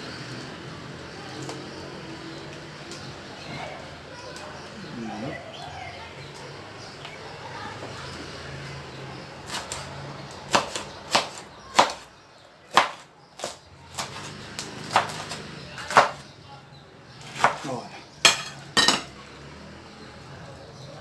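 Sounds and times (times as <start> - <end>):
knife chopping on cutting board: 10.5 - 12.1, 12.7 - 16.2, 17.2 - 17.6.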